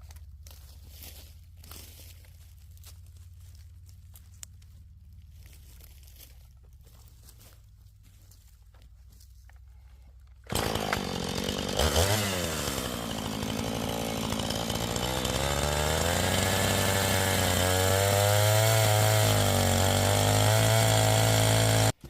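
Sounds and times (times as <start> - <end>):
chainsaw running: 10.3 - 22.0.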